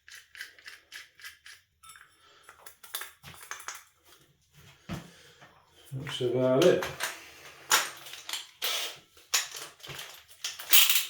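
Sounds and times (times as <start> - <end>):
small clicks and clinks: 0.0 - 3.9.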